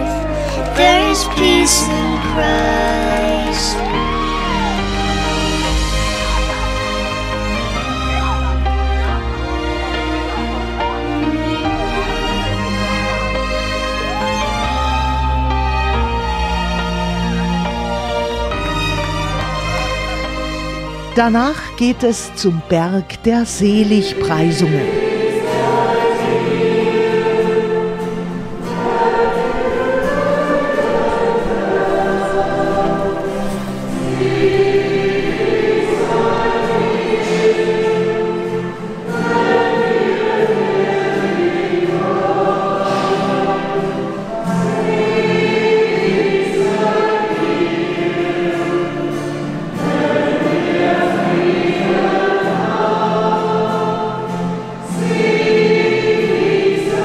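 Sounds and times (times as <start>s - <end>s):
choir singing sacred music: 0.0s - 14.8s, 18.5s - 57.0s
singers breathing: 0.1s - 0.7s.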